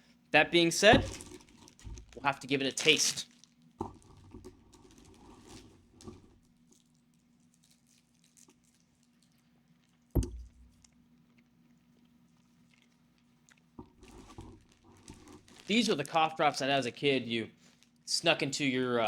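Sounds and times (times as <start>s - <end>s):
loud thump: 0.8s - 2.2s.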